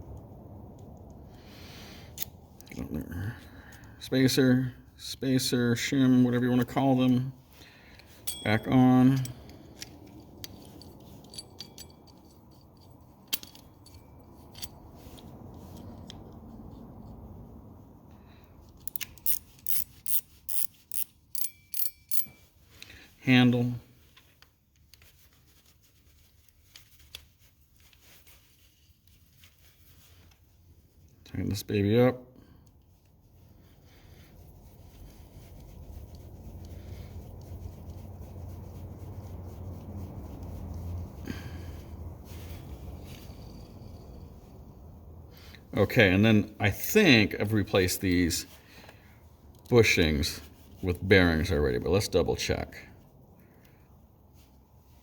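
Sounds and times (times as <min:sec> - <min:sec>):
metal parts clicking and scraping: 0:07.9 - 0:16.4, 0:18.7 - 0:22.9
reel mechanism sharp clicks: 0:18.9 - 0:22.2.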